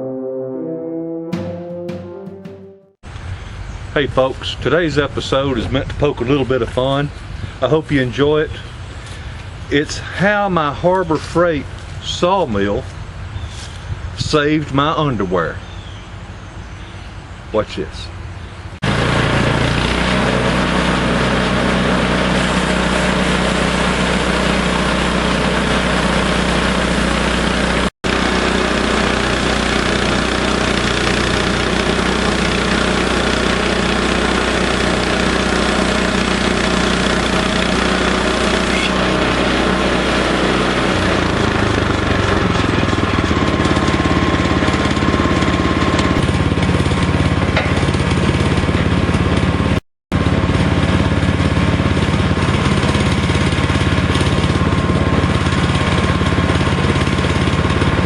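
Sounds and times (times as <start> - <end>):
sawmill engine sawing log: 18.8 - 58.0.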